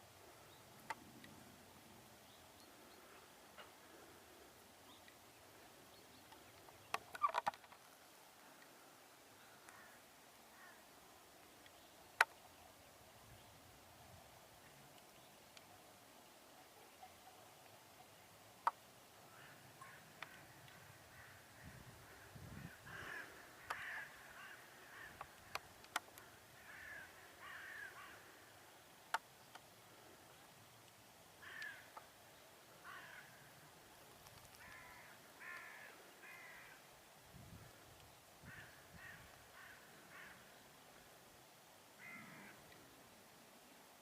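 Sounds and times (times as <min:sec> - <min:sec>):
bird calling: 0:06.0 - 0:07.7
sharp clicks: 0:25.1 - 0:26.3, 0:34.1 - 0:34.9.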